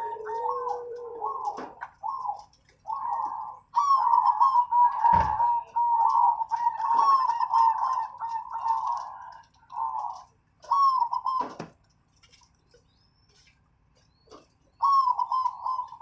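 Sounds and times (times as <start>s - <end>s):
dove cooing: 0.0s - 11.7s, 14.3s - 16.0s
sharp knock: 5.1s - 5.5s.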